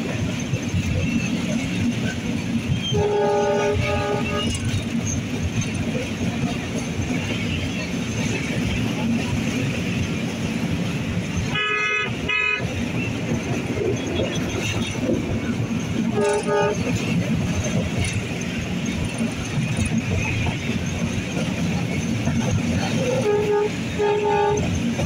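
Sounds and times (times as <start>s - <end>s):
traffic rumble: 0.0s - 25.0s
vehicle horns honking: 2.8s - 4.8s, 11.4s - 12.8s, 16.0s - 17.0s, 22.8s - 24.8s.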